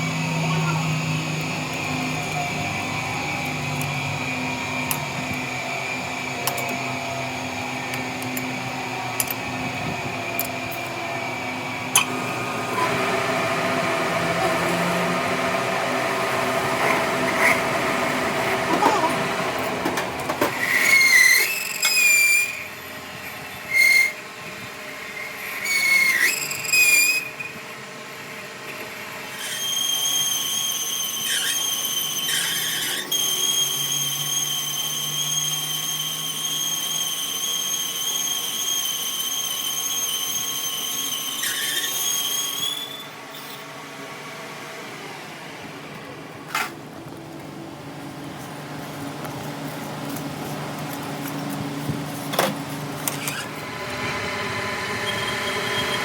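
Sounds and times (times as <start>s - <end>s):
tool squealing on metal: 20.5s - 22.7s, 23.6s - 24.2s, 25.6s - 27.5s, 29.3s - 43.7s, 52.2s - 53.6s, 54.8s - 56.0s.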